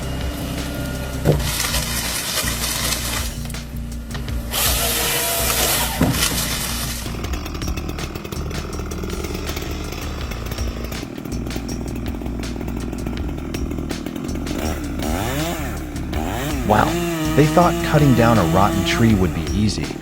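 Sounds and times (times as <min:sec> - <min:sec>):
sharp crackles: 0:00.0 - 0:17.5
chainsaw engine cutting: 0:00.0 - 0:20.0.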